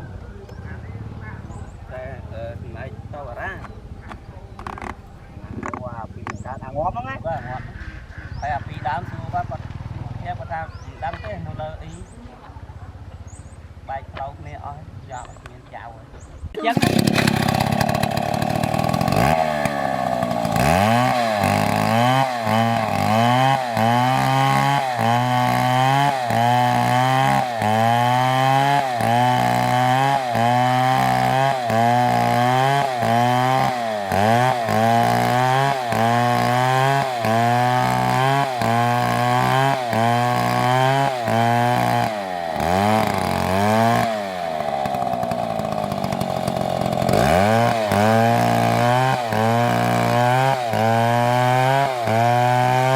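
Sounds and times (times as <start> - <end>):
chainsaw cutting wood: 4.1 - 6.6, 16.6 - 52.9.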